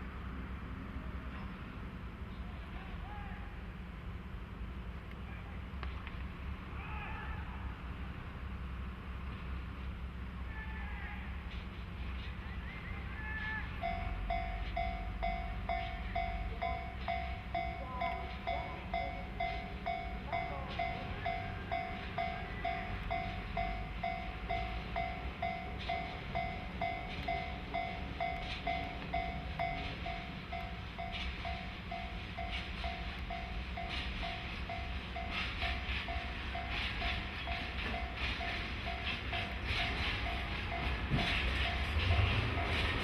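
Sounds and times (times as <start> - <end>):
diesel locomotive rumble: 0.0 - 43.0
level crossing bell ringing: 13.8 - 41.0
train cars clattering: 13.8 - 43.0.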